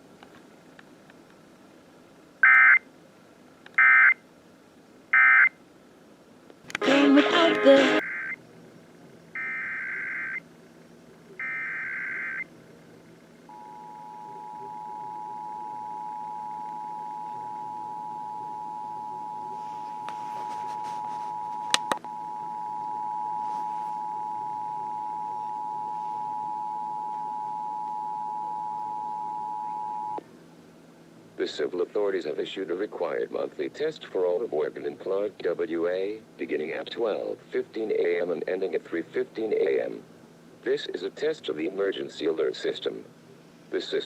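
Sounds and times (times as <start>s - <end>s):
screechy digital data bursts: 8.0s - 8.4s
two-tone attention signal: 13.5s - 30.2s.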